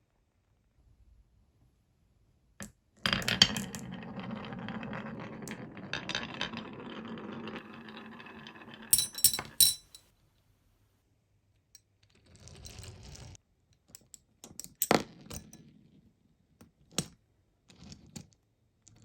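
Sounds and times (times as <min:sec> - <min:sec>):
marbles rolling on wooden track: 0:03.0 - 0:09.7
marble clacks: 0:03.1 - 0:10.0.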